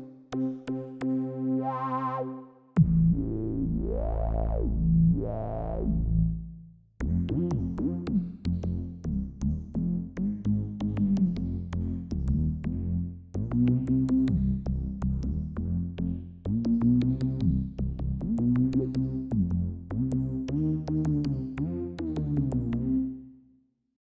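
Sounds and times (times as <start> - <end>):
synthesizer chord with vibrato: 0.0 - 6.1
low synth pad filter sweep: 1.6 - 8.1.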